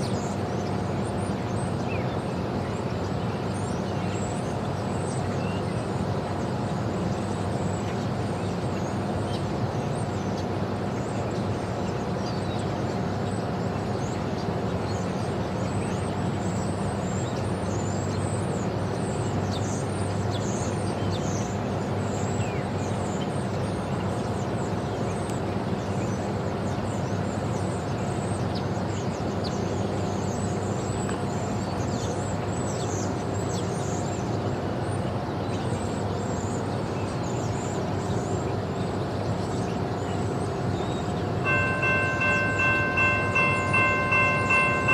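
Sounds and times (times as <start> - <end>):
constant hum: 38.9 - 44.9
low engine rumble: 41.4 - 44.9.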